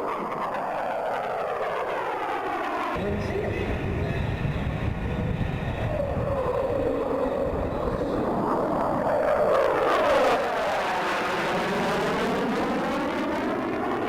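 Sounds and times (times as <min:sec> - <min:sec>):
jet engines roaring in flyby: 0:00.0 - 0:14.0.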